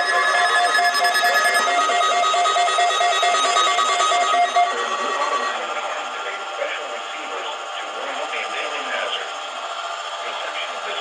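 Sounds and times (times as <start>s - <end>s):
electronic alert beep: 0.0s - 5.6s
other radios audio: 0.0s - 11.0s.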